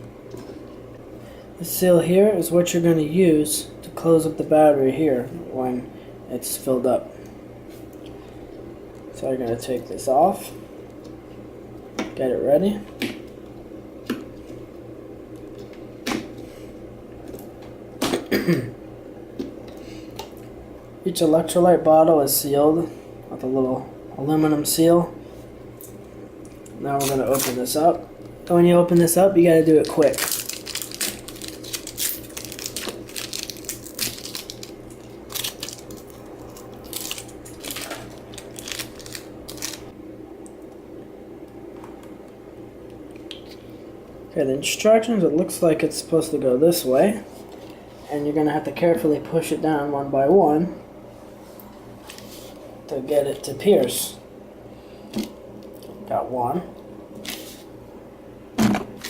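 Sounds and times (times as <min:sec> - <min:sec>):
steady low hum: 0:00.0 - 0:59.0
plastic packaging crinkling: 0:27.0 - 0:27.8, 0:28.9 - 0:39.9.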